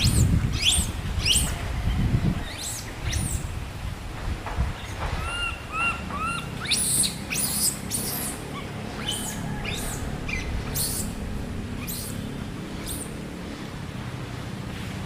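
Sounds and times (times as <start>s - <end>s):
monkey squeaking and squealing: 0.0s - 1.6s, 2.4s - 3.5s, 4.8s - 13.2s.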